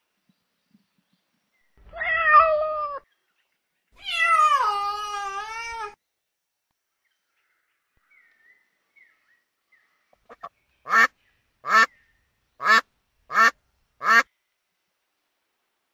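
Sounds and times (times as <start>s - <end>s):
duck quacking: 10.3s - 11.9s, 12.6s - 14.2s.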